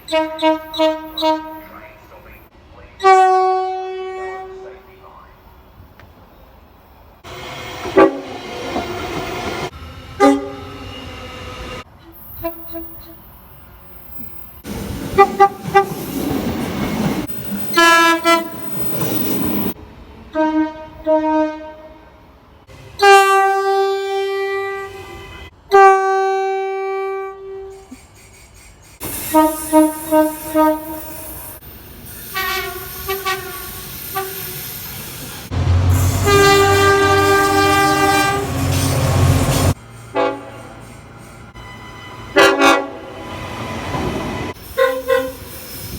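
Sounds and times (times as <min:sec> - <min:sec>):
locomotive horn blasts: 0:00.0 - 0:01.9, 0:03.0 - 0:04.7, 0:10.2 - 0:10.8, 0:17.6 - 0:18.8, 0:20.3 - 0:22.1, 0:22.7 - 0:27.8, 0:29.3 - 0:31.2, 0:32.3 - 0:34.4, 0:35.5 - 0:40.6, 0:41.6 - 0:43.3, 0:44.5 - 0:45.4
low rumble of passing train: 0:00.0 - 0:25.7, 0:26.3 - 0:45.9.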